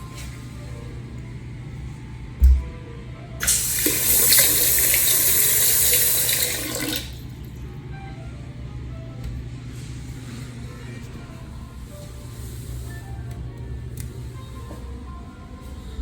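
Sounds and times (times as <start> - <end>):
faucet water running into basin: 3.4 - 7.6.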